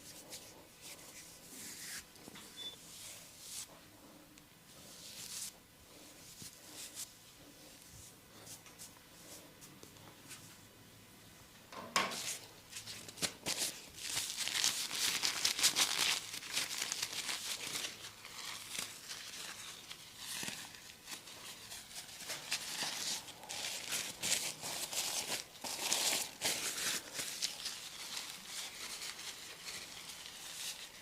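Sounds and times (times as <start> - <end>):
hands rubbing through hair: 0.0 - 2.1, 2.8 - 3.7, 4.8 - 5.6.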